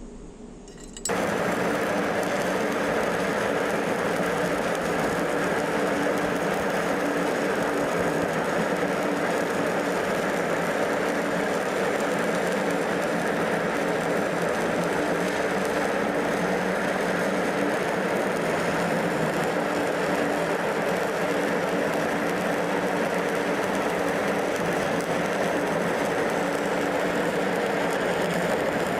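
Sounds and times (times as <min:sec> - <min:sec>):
low steady hum: 0:00.0 - 0:01.2
welding arc crackling and sizzling: 0:00.7 - 0:28.9.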